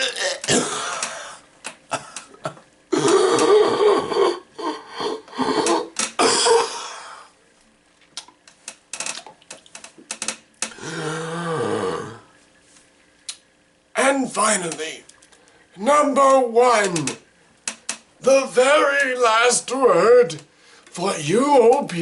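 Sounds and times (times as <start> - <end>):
person making noisy vocal sounds: 0.0 - 1.4, 2.9 - 7.3, 10.8 - 12.3.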